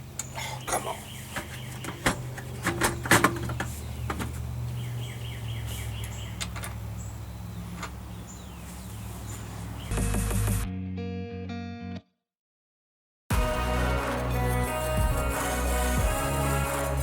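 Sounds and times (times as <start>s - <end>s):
hand tools clicking and knocking: 1.3s - 4.4s.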